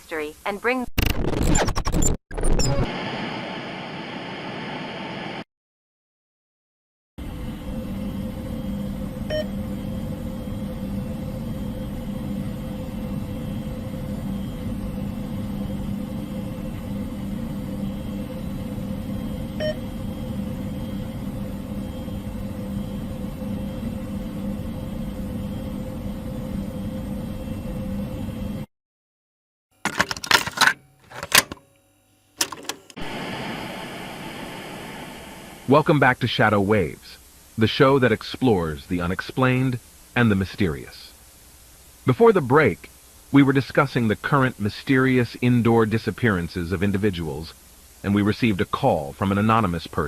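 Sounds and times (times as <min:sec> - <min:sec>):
crackling distortion bursts: 0:00.8 - 0:05.4
low hum with hiss: 0:07.3 - 0:28.7, 0:29.9 - 0:50.0
static hiss: 0:32.4 - 0:50.0.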